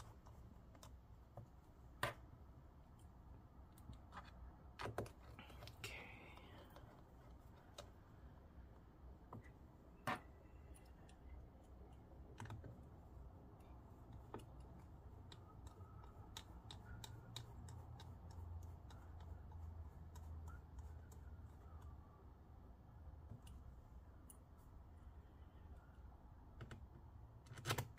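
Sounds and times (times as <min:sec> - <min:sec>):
screwdriver clicking and ticking: 0:14.1 - 0:19.3.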